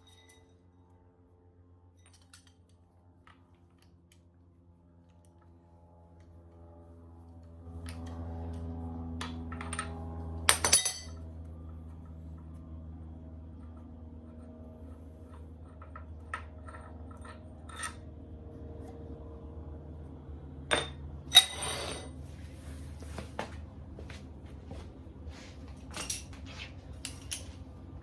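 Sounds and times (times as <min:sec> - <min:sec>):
low steady hum: 0:00.0 - 0:28.0
metal tools clinking: 0:10.5 - 0:11.2, 0:20.7 - 0:22.2, 0:25.9 - 0:27.6.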